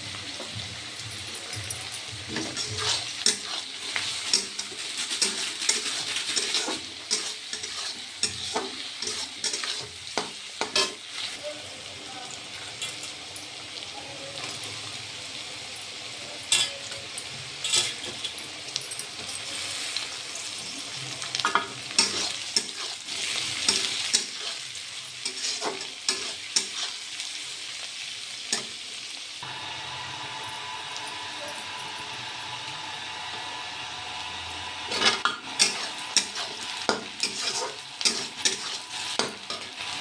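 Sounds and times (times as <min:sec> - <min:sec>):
food sizzling in a pan: 0:00.0 - 0:40.0
spatula scraping a pan: 0:02.3 - 0:11.4, 0:19.5 - 0:27.2, 0:34.8 - 0:40.0.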